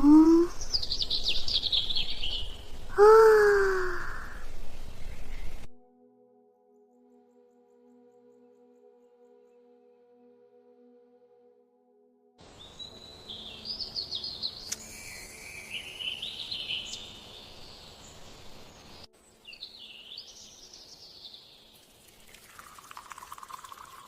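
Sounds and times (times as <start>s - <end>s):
birds singing: 0.0s - 5.7s, 12.4s - 21.7s
steady background hiss: 12.4s - 22.8s.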